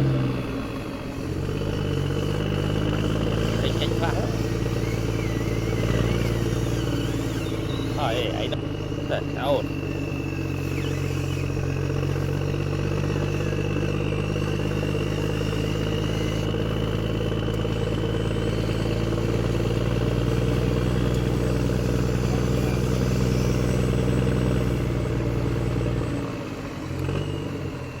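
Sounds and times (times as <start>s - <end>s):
engine idling: 0.0s - 28.0s
faint high whine: 2.9s - 28.0s.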